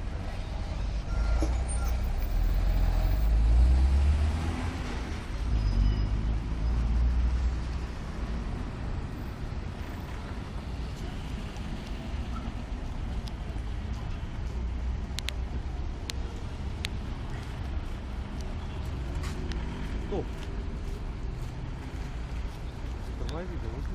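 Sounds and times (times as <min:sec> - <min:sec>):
vehicle rumbling past: 0:00.0 - 0:09.2
traffic noise: 0:00.0 - 0:23.9.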